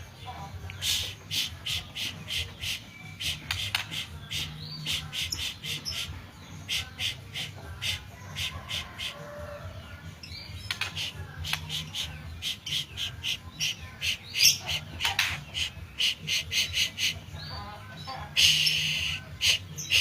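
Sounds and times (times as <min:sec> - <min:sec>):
bird singing sharp repeated notes: 0:00.0 - 0:09.2, 0:10.1 - 0:20.0.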